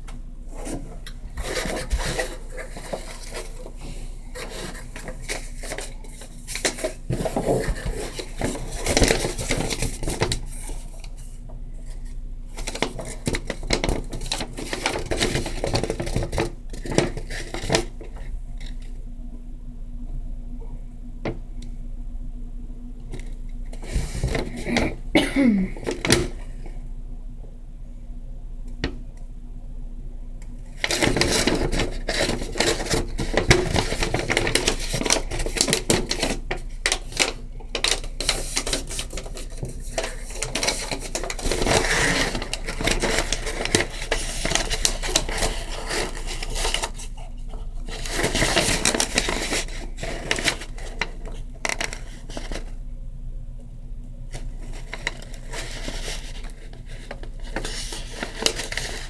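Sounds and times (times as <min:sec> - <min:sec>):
packaging rustling: 0:00.6 - 0:18.8, 0:30.7 - 0:52.8, 0:54.3 - 0:59.0.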